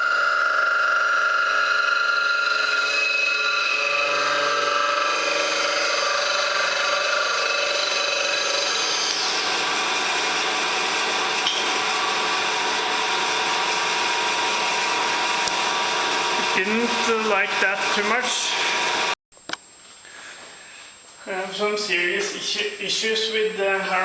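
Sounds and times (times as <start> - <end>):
milling machine cutting metal: 0.0 - 19.2.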